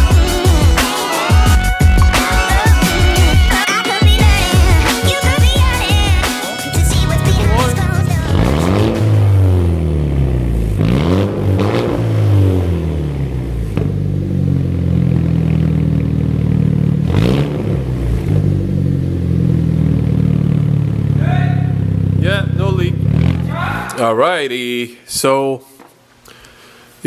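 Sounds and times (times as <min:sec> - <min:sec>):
car engine idling and revving: 0:06.8 - 0:23.5.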